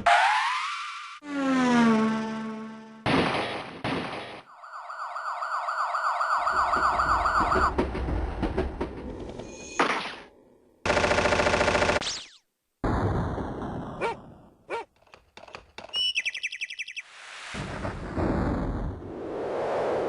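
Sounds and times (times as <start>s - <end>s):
synthesized siren wail: 0.0s - 3.0s, 4.5s - 7.7s.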